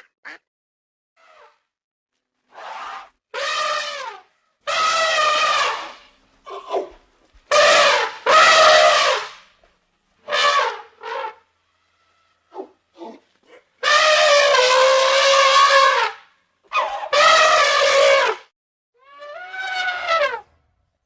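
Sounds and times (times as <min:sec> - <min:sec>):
animal calling: 0:10.6 - 0:15.8.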